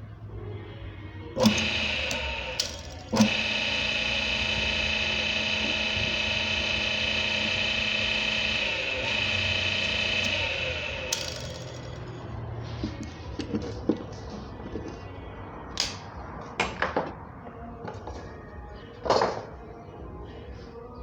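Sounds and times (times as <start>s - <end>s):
small electric motor whining hum: 1.2s - 13.1s
motor switch click: 1.4s - 12.3s.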